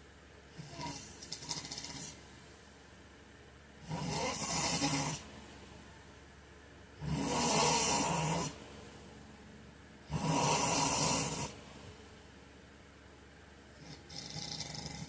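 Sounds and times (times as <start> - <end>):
man snoring: 0.6 - 2.2, 3.8 - 5.2, 7.0 - 8.6, 10.1 - 11.6, 13.8 - 15.0.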